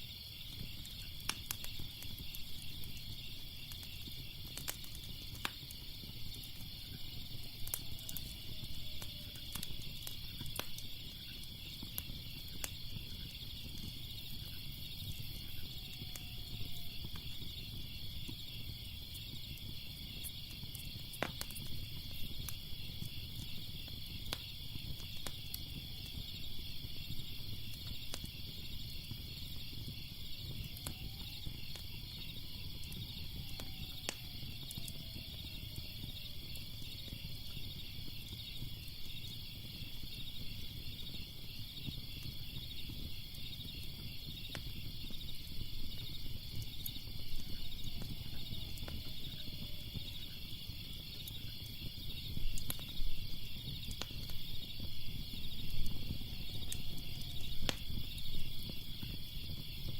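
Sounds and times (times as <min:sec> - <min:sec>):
crickets chirping: 0:00.0 - 0:59.9
fire crackling and popping: 0:00.0 - 0:59.9.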